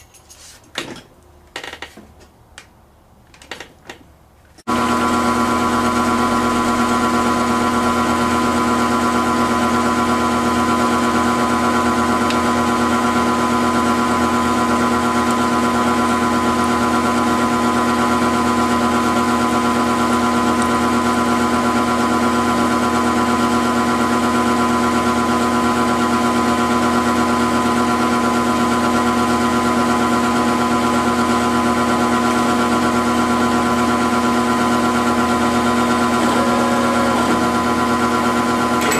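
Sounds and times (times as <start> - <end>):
milling machine humming and whining: 34.5 - 38.9.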